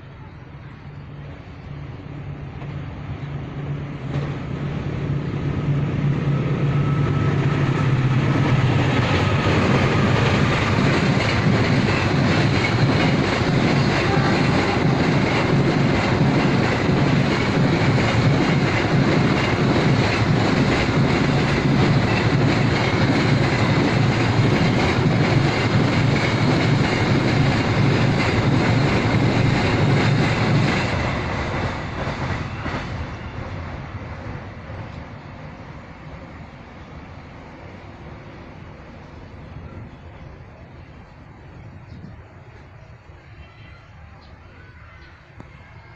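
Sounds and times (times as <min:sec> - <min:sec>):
freight train wheels clattering: 0:07.6 - 0:33.6.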